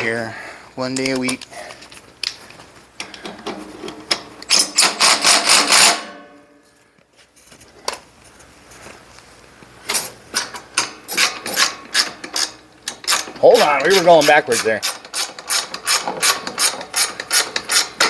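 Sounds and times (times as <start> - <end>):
power ratchet clicking rattle: 4.4 - 6.0, 10.8 - 18.0.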